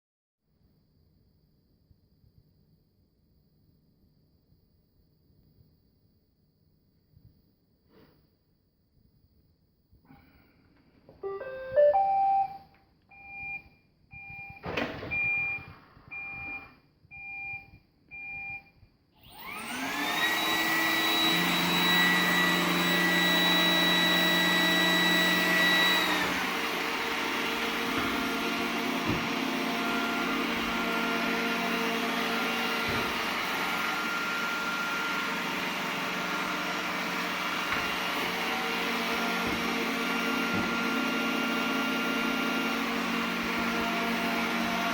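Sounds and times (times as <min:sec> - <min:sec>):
robot vacuum rising chime: 0:11.2 - 0:12.6
short beeps: 0:11.2 - 0:13.6
vacuum motor whining: 0:19.2 - 0:44.9.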